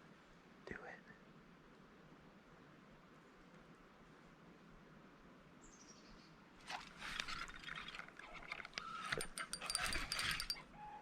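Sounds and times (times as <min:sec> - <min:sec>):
water splashing: 0:06.6 - 0:10.5.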